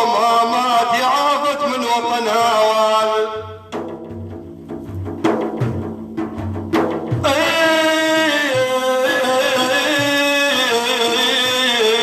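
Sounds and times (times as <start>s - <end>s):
man singing devotional melody: 0.0s - 3.7s, 7.1s - 12.0s
drum stroke: 3.7s - 7.7s.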